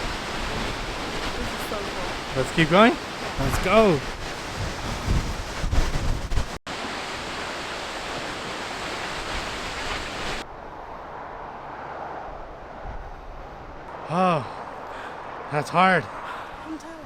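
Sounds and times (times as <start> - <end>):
waterfall rushing: 0.0 - 5.8, 6.7 - 10.4
wind buffeting microphone: 0.0 - 17.0.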